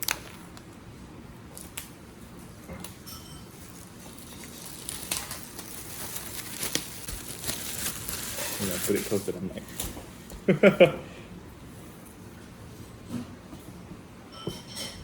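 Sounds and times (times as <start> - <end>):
plastic wrap crackling and rustling: 0.0 - 0.8, 1.5 - 10.2
pull tab tearing wrapping: 3.8 - 9.3.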